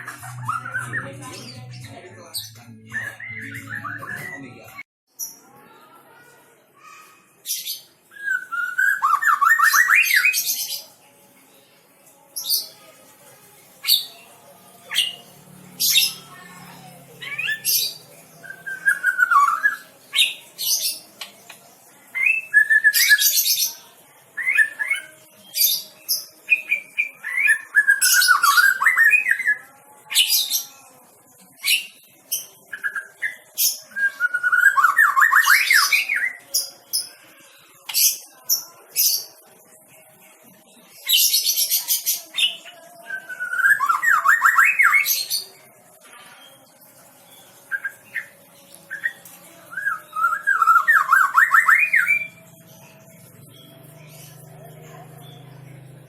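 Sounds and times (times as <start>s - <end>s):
songbird singing: 0.0s - 4.8s, 47.3s - 56.0s.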